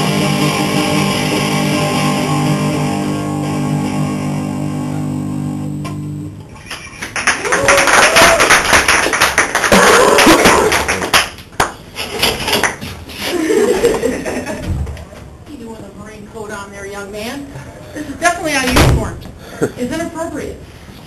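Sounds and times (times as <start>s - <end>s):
guitar chord ringing: 0.0s - 6.4s
audience clapping and cheering: 6.6s - 11.8s
whooping voices: 7.4s - 8.6s.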